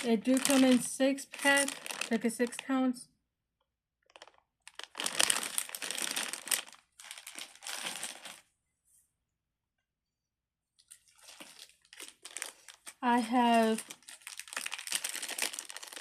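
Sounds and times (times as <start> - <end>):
plastic crinkling: 0.0 - 2.8, 4.0 - 8.5, 10.8 - 16.0.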